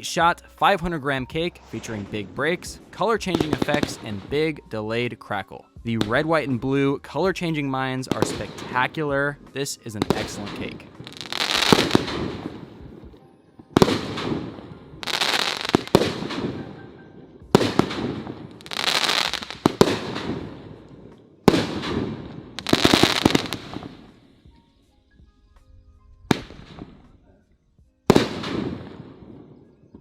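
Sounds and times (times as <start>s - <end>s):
firework bangs: 1.4s - 4.4s, 10.1s - 12.6s, 13.8s - 16.6s, 17.6s - 20.8s, 21.5s - 24.2s, 28.1s - 29.2s.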